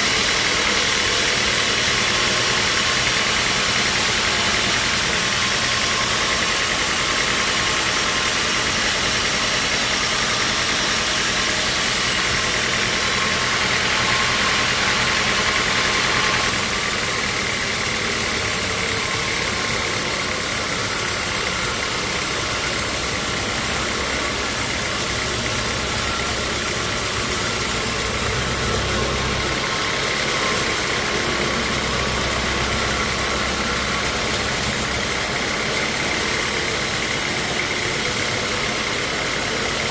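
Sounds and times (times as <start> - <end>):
sawmill machinery hum: 0.0 - 39.9
machinery hiss: 16.4 - 39.8.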